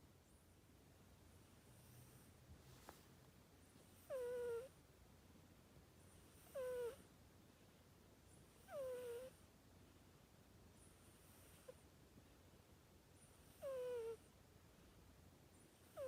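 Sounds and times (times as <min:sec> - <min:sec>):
kitten snoring: 0:01.6 - 0:02.4, 0:03.9 - 0:04.8, 0:06.1 - 0:07.1, 0:08.6 - 0:09.4, 0:10.8 - 0:11.8, 0:13.2 - 0:14.3, 0:15.8 - 0:16.0.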